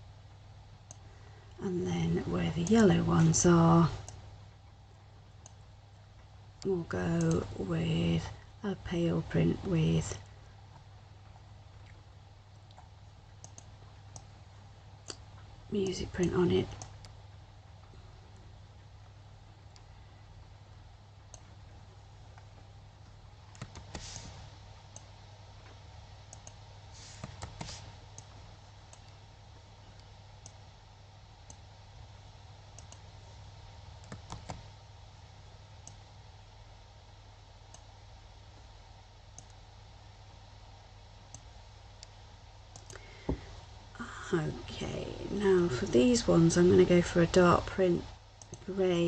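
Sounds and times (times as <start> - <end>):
faint low hum: 0.0 - 49.0
computer mouse clicking: 0.8 - 1.0, 3.9 - 4.2, 5.4 - 5.6, 12.6 - 14.3, 21.3 - 21.5, 23.5 - 25.1, 26.3 - 29.2, 30.0 - 30.6, 31.4 - 31.6, 32.7 - 33.1, 34.0 - 34.7, 35.8 - 36.1, 37.7 - 37.9, 39.3 - 39.6, 41.3 - 43.1, 48.4 - 48.7.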